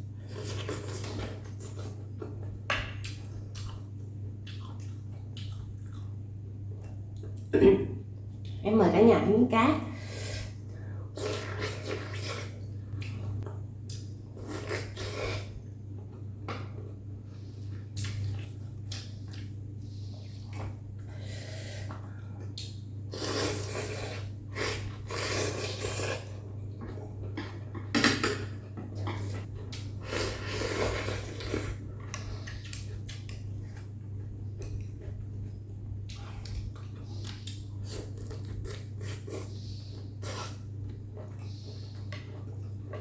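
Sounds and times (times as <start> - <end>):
steady low hum: 0.0 - 43.0
person chewing: 3.0 - 6.2, 17.7 - 19.6, 29.0 - 43.0.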